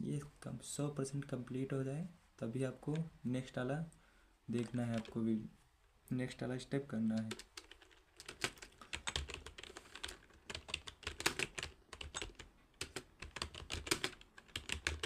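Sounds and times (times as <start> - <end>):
typing on keyboard: 7.2 - 15.0.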